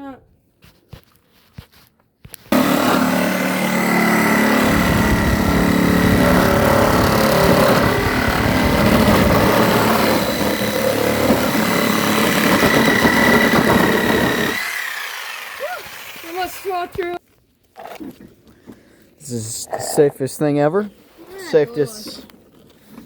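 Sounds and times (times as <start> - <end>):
power tool cutting metal: 2.5 - 17.0.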